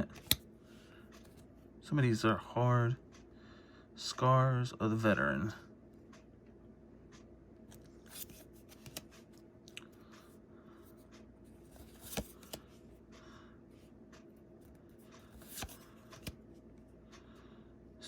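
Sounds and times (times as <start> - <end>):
cards sliding and clicking: 0.1 - 0.5, 1.1 - 1.5, 7.7 - 9.4, 11.1 - 12.8, 14.6 - 16.4.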